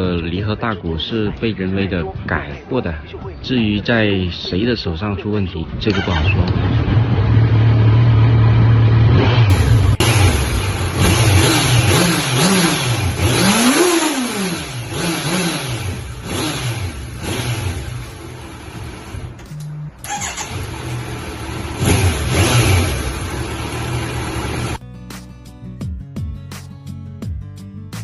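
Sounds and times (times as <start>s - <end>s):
motorcycle engine revving: 5.9s - 24.8s.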